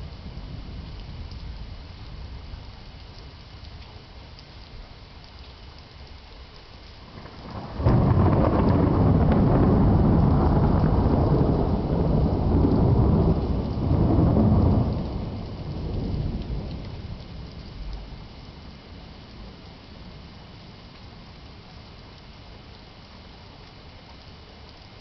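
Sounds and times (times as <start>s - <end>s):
steady rain hissing: 0.0s - 25.0s
thunder clap and rumble: 7.2s - 18.1s.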